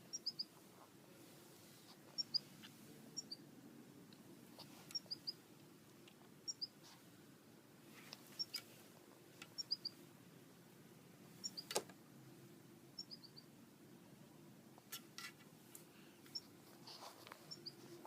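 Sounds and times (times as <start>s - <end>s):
small bird chirping: 0.0s - 0.6s, 2.1s - 3.4s, 4.6s - 5.4s, 6.4s - 6.8s, 8.3s - 8.7s, 9.5s - 10.0s, 11.4s - 11.7s, 13.0s - 13.5s, 16.3s - 16.6s, 17.4s - 17.9s.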